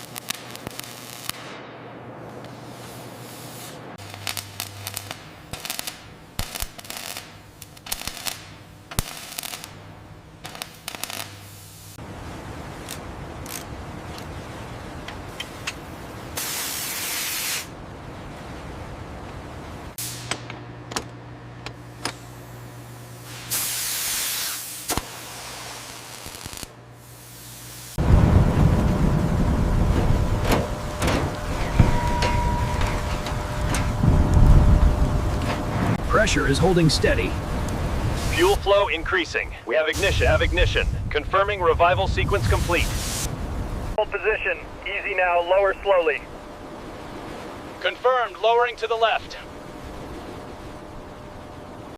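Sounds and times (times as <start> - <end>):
sharp crackling clicks: 0.0 - 1.6, 4.0 - 9.8, 10.4 - 11.4, 12.8 - 14.3, 26.1 - 26.7
steady low hum: 0.0 - 51.9
spray hissing: 2.8 - 4.2, 16.4 - 17.7, 23.2 - 28.0, 42.4 - 43.3.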